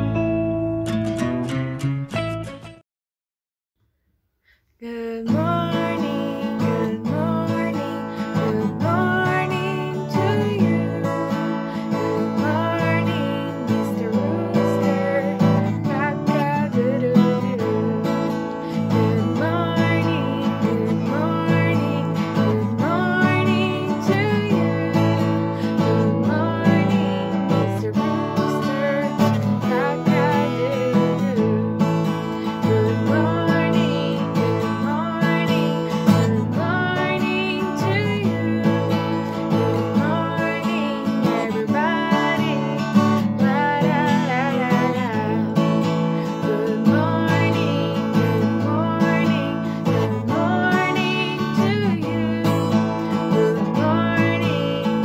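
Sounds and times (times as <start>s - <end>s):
strummed acoustic guitar: 0.0s - 2.8s, 5.2s - 55.0s
woman singing: 4.8s - 55.0s.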